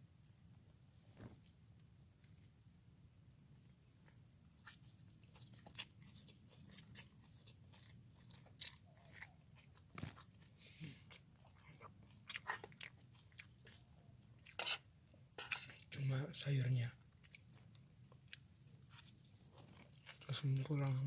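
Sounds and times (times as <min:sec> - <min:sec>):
person chewing crunchy noodles: 0:04.5 - 0:15.9, 0:17.0 - 0:21.0.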